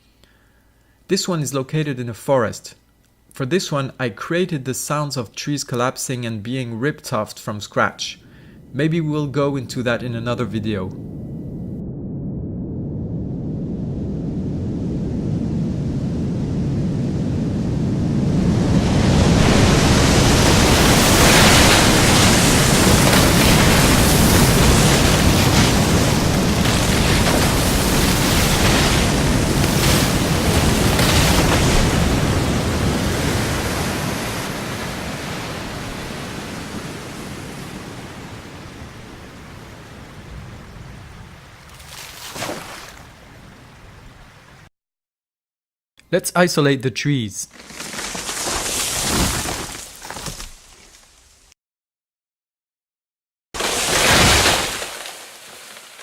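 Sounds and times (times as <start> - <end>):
low rumble: 8.6 - 20.8
crashing water rush: 18.7 - 40.8, 41.6 - 43.2, 53.6 - 56.0
trees cracking and collapsing: 19.5 - 34.4, 47.5 - 51.5, 53.6 - 56.0.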